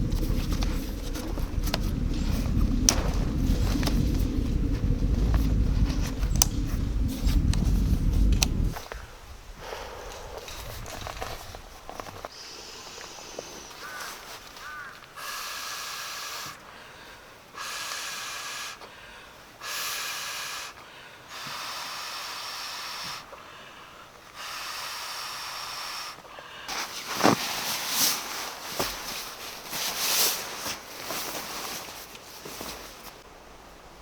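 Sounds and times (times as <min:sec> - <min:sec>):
air hissing in strokes: 0:19.6 - 0:23.3, 0:24.3 - 0:26.2.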